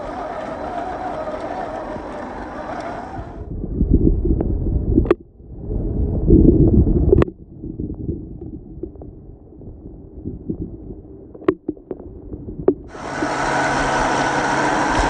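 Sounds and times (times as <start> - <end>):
rc car motor rumble: 0.0 - 3.5, 12.8 - 15.0.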